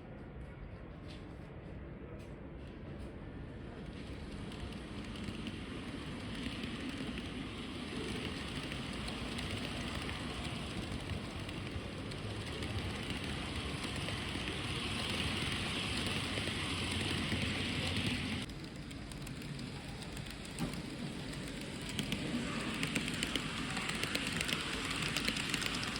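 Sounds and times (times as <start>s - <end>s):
model train wheels rattling on rail: 3.8s - 25.9s.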